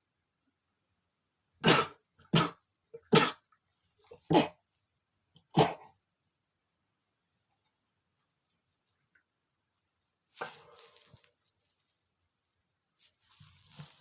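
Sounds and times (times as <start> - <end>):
man sneezing: 1.6 - 3.4.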